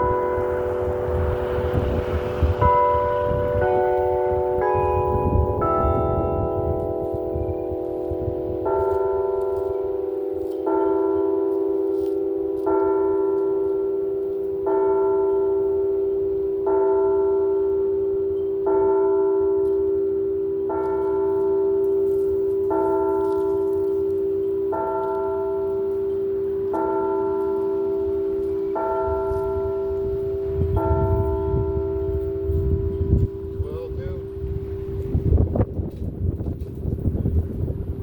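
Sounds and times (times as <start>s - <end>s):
wind rumble on microphone: 0.0s - 10.8s, 20.8s - 38.0s
church bell tolling: 0.0s - 36.7s.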